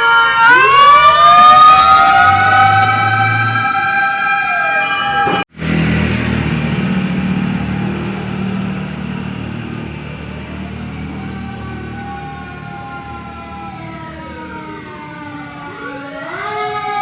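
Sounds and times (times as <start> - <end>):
siren wailing: 0.0 - 8.4, 9.8 - 17.0
vehicle engine with road noise: 5.0 - 16.0.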